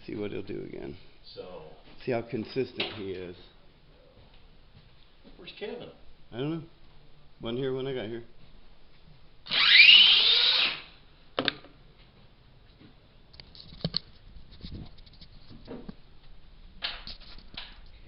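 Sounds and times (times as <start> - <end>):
electric motor whining: 9.5 - 10.8.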